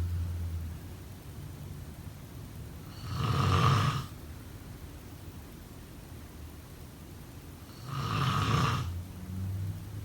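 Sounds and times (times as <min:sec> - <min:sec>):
person snoring: 0:02.9 - 0:04.1, 0:07.8 - 0:08.9.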